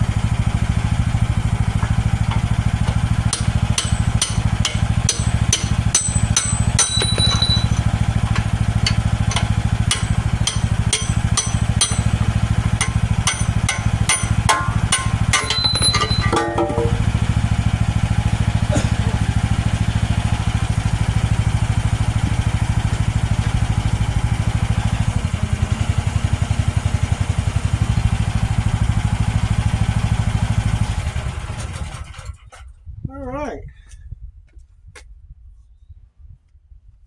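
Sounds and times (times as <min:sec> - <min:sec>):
excavator engine idling: 0:00.0 - 0:32.4
sharp metallic knocks: 0:01.8 - 0:17.2.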